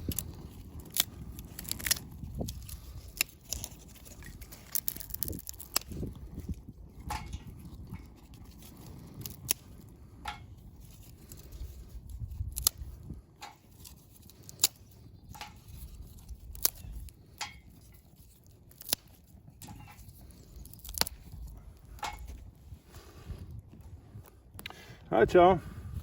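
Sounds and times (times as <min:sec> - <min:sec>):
sharp fire pops: 0:00.0 - 0:18.0
low fire rumble: 0:00.0 - 0:26.0
twigs crackling in fire: 0:00.0 - 0:26.0.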